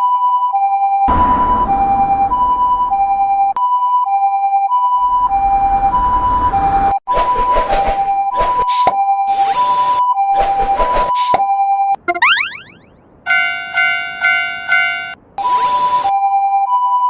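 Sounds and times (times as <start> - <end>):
two-tone crossing warning alarm: 0.0 - 17.0
low rumble: 1.1 - 3.6, 5.0 - 7.0.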